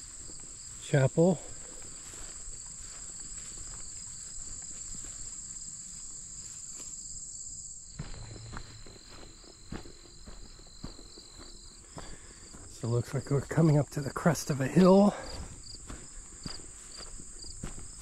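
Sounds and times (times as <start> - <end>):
insects trilling: 0.0 - 18.0
soft footsteps or knocks: 8.0 - 12.7.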